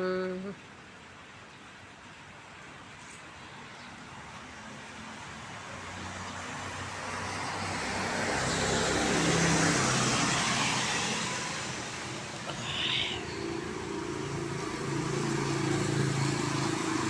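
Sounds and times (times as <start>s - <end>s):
tyres hissing on wet road: 2.8s - 17.0s
car engine hum: 8.6s - 17.0s.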